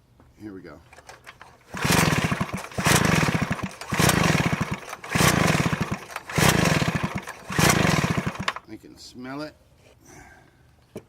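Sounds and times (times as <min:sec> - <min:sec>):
engine cranking with pull starter: 0:00.9 - 0:08.6.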